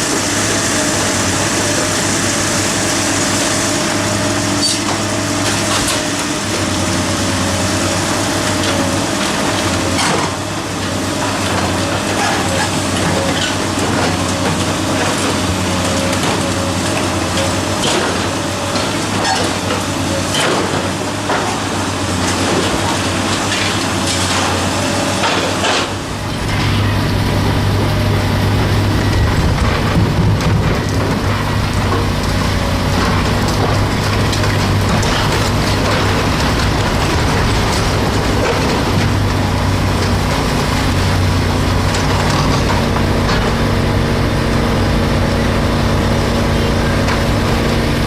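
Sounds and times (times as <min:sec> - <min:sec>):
machinery clattering and knocking: 0:08.4 - 0:48.0
low engine drone: 0:25.2 - 0:48.0.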